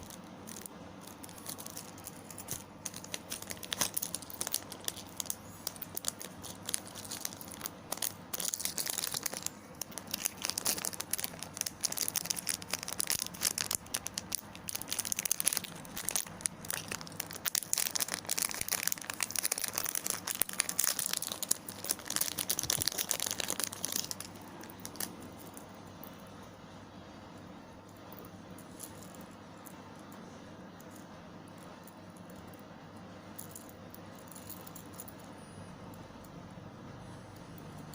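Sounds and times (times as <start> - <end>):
plastic packaging crinkling: 0.0 - 25.7.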